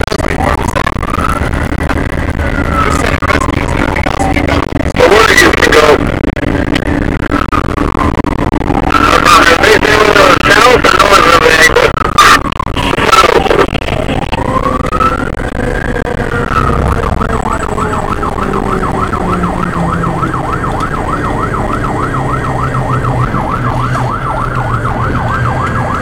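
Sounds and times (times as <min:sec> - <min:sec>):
fire engine siren wailing and yelping: 0:00.3 - 0:26.0
truck engine running: 0:14.0 - 0:26.0.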